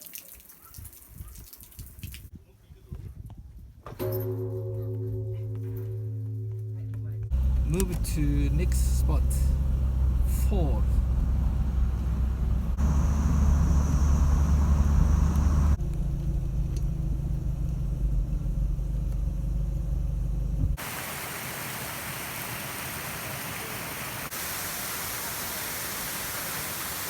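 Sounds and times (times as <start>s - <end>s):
car engine and road noise: 7.3s - 21.2s.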